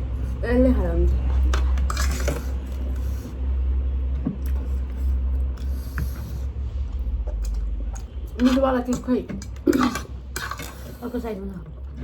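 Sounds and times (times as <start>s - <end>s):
steady low hum: 0.0s - 12.0s
utensil scraping a bowl: 1.2s - 3.4s.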